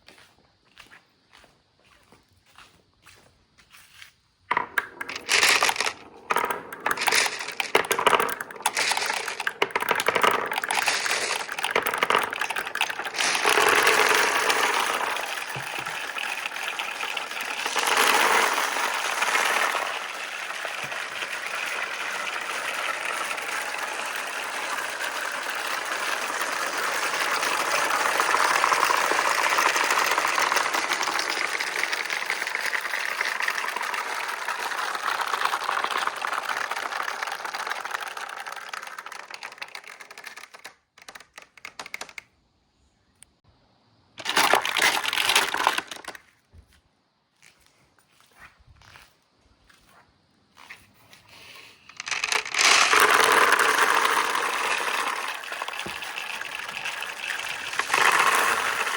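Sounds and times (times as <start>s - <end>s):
glass marbles clicking and clattering: 4.5s - 40.6s, 51.9s - 58.9s
marbles rolling rumble: 4.5s - 42.2s, 44.2s - 46.2s, 51.6s - 58.9s.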